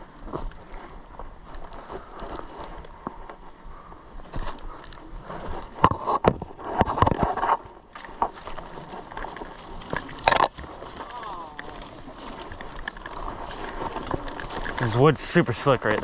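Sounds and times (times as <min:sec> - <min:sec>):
twigs cracking: 0:04.3 - 0:16.0
footsteps crunching through dry leaves: 0:07.9 - 0:16.0.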